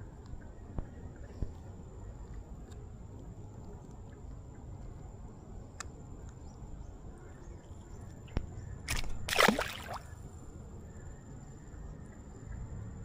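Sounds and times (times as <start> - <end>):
water splash: 8.9 - 10.2
low outdoor rumble: 10.0 - 13.0.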